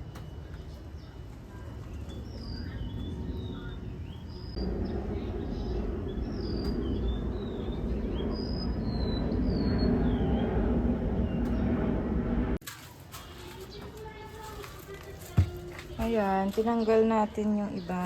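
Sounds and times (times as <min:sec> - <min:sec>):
small birds chirping: 0:00.0 - 0:10.6, 0:13.2 - 0:18.0
low rumble: 0:01.8 - 0:12.6.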